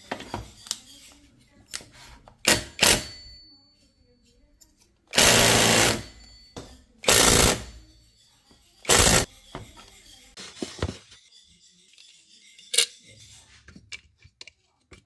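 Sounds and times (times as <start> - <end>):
power driver running: 5.2 - 6.0, 8.9 - 9.2
hand tools clicking and knocking: 8.8 - 9.3.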